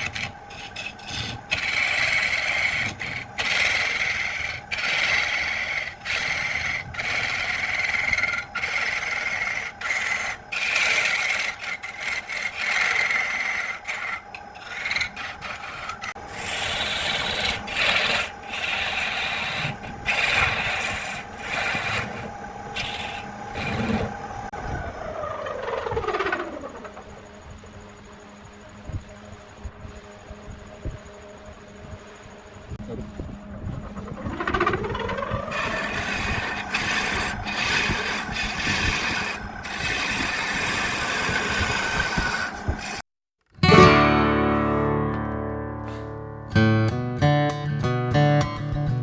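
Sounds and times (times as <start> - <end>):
wood lathe running: 0.0 - 27.2, 32.8 - 43.0
tool rubbing spinning wood: 0.0 - 27.3, 32.8 - 43.1.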